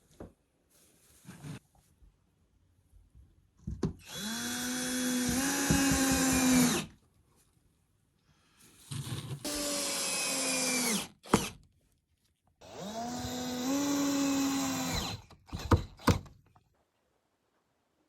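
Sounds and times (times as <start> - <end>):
electric drill spinning: 4.0 - 6.9, 9.4 - 11.6, 12.6 - 16.1.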